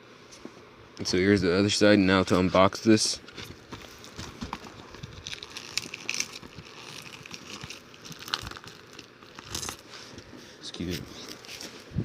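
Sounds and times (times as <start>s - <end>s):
plastic shrink wrap crinkling: 3.5s - 11.9s.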